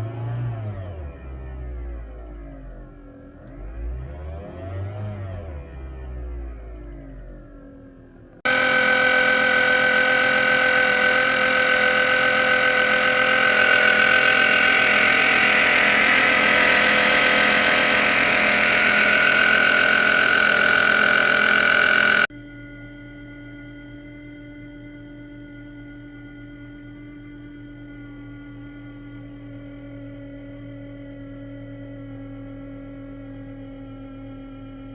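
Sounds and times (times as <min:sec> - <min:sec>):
car engine revving: 0:08.5 - 0:22.3
engine belt whine: 0:08.5 - 0:22.3.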